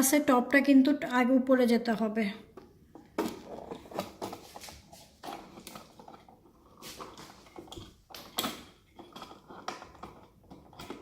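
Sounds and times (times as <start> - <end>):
scratchy rustling: 3.3 - 7.8.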